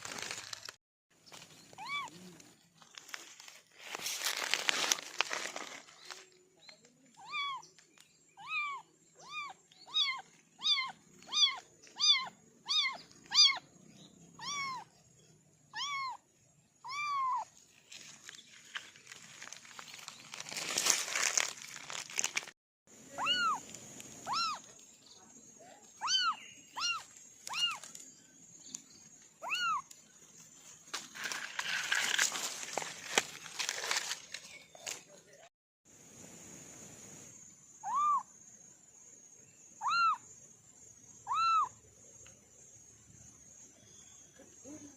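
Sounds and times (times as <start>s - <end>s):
rustling: 0.0s - 8.1s, 17.4s - 22.6s, 29.8s - 35.5s
kittens mewing: 8.4s - 13.6s, 14.4s - 14.9s, 15.7s - 16.2s, 16.8s - 17.5s, 23.2s - 23.6s, 24.2s - 24.6s, 25.9s - 27.9s, 29.4s - 29.9s, 39.8s - 40.2s, 41.3s - 41.7s.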